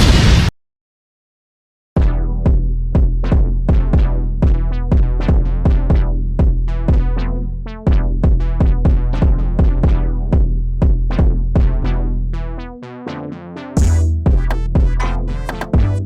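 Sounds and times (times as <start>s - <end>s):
drum machine beat: 2.0s - 12.0s, 13.8s - 16.0s
deep bass: 2.0s - 12.8s, 13.8s - 16.0s.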